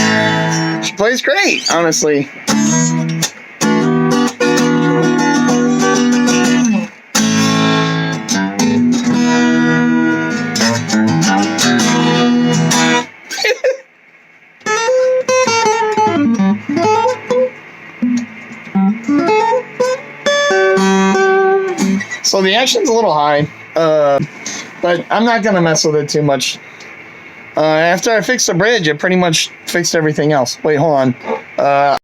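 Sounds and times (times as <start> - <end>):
guitar picked bending notes: 0.0 - 13.6, 14.6 - 24.8
acoustic guitar strummed chords: 0.0 - 13.7, 14.6 - 25.8.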